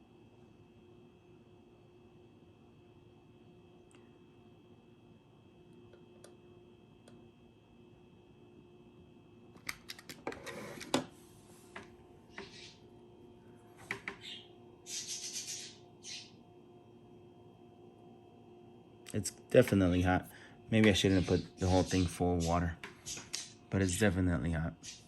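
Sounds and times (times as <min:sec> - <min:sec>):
faint steady hum: 0:00.0 - 0:25.0.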